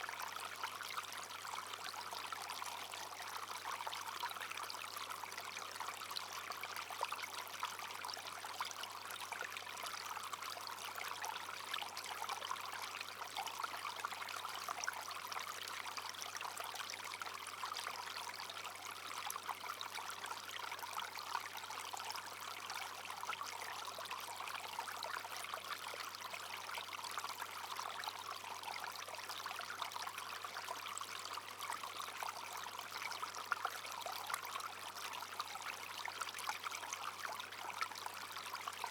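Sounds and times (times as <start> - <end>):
brook babbling over stones: 0.0 - 38.9.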